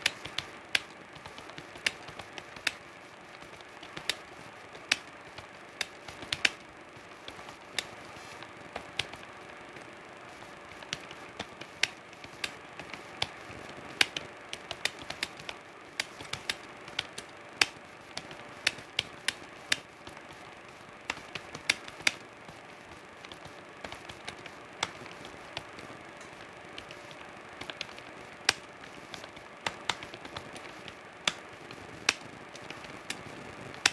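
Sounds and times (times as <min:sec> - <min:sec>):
computer keyboard keys clicking: 0:00.0 - 0:06.6, 0:07.2 - 0:09.2, 0:10.4 - 0:20.2, 0:21.0 - 0:22.6, 0:23.2 - 0:33.9
faint hum: 0:00.0 - 0:33.9.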